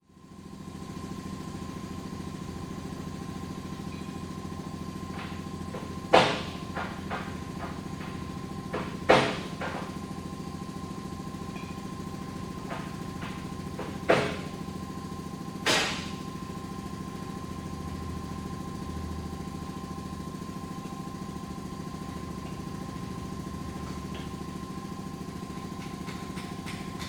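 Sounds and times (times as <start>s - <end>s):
air compressor running: 0.0s - 27.0s
loud metal clanks: 5.1s - 10.0s
tools knocking: 5.1s - 10.0s, 12.5s - 14.7s, 15.6s - 16.2s, 25.8s - 27.0s.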